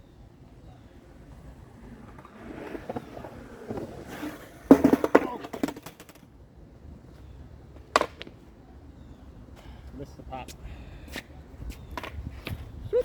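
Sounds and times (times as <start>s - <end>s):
skateboard wheels rolling on concrete: 0.0s - 13.0s
skateboard clacking on ground: 1.0s - 6.3s, 7.8s - 8.4s, 11.9s - 12.7s.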